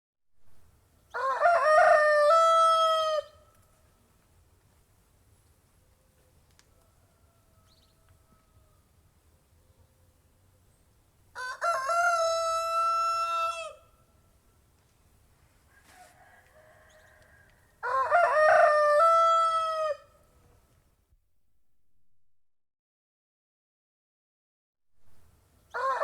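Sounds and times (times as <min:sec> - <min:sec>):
rooster crowing: 0:01.1 - 0:03.4, 0:06.7 - 0:08.9, 0:11.4 - 0:13.9, 0:15.7 - 0:20.2, 0:25.7 - 0:26.0.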